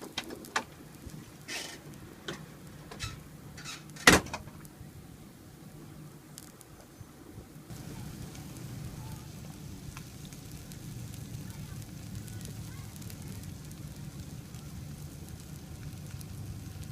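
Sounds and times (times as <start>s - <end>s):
sandwich sizzling on grill: 0.0s - 16.9s
low even rumble: 7.4s - 16.9s.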